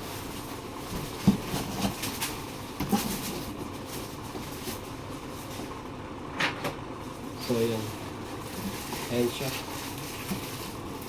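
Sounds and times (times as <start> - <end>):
cardboard rustling and scraping: 0.0 - 5.7, 7.9 - 11.0.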